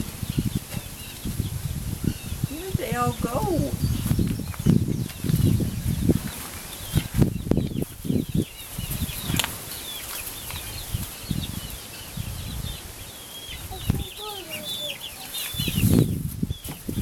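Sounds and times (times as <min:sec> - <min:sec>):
low thuds and rustling: 0:00.0 - 0:09.7, 0:15.6 - 0:17.0
chicks peeping: 0:00.0 - 0:17.0.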